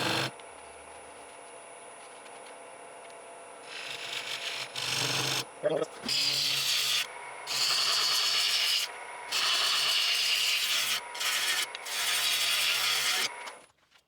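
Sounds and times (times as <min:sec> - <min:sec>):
lathe motor hum: 0:00.0 - 0:00.4, 0:03.7 - 0:13.6.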